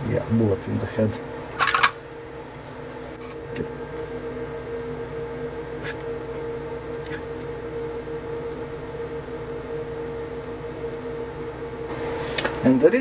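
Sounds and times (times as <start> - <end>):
electrical hum: 0.0 - 13.0.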